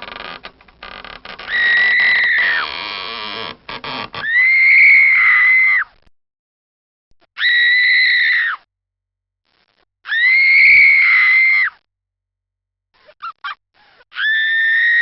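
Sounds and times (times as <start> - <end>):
high-pitched screams: 1.5 - 2.7, 4.2 - 6.0, 10.1 - 11.8, 14.2 - 15.0.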